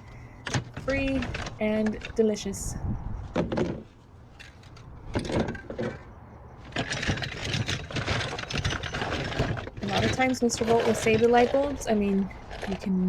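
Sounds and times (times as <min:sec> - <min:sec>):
small items clattering together: 0:06.7 - 0:12.9.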